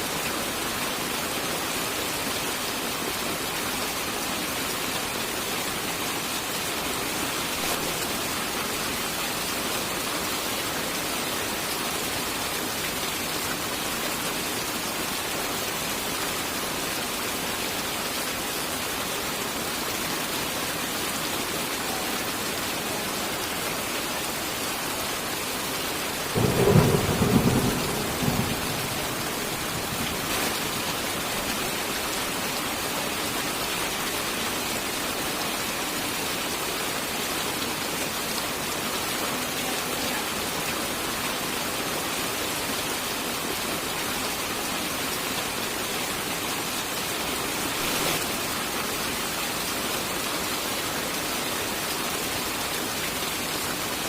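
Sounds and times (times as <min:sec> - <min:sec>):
steady rain: 0:00.0 - 0:54.0
thunderclap rumbling: 0:26.4 - 0:30.8.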